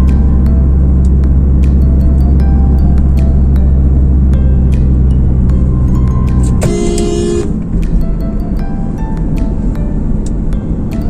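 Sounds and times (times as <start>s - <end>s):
car driving rumble: 0.0s - 8.3s
music with held notes: 0.0s - 11.0s.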